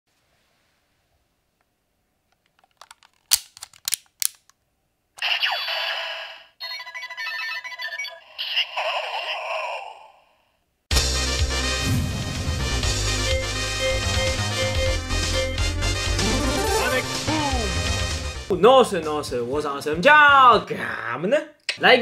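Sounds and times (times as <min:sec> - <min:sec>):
electronic toy sound effects: 0:05.2 - 0:09.4, 0:16.2 - 0:17.8.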